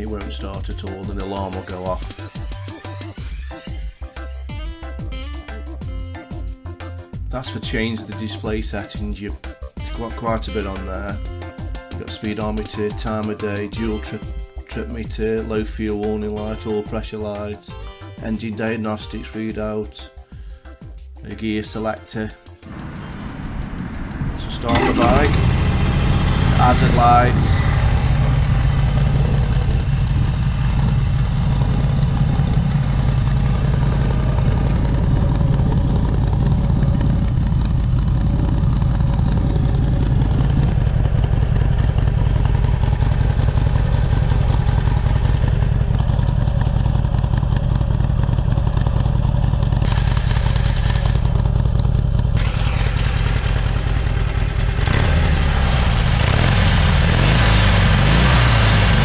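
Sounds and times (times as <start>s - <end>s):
motorcycle v-twin idling: 22.7s - 58.0s.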